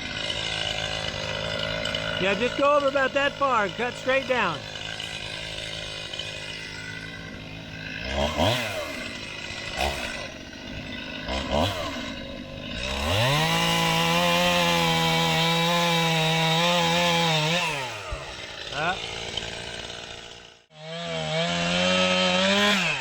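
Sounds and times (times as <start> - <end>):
chainsaw idling and revving: 0.0 - 23.0.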